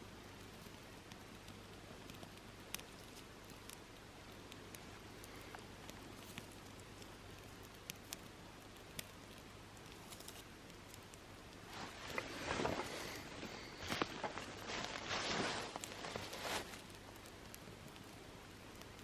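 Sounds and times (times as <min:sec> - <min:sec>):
faint steady hiss: 0:00.0 - 0:19.0
small ticks: 0:00.3 - 0:15.0, 0:15.8 - 0:19.0.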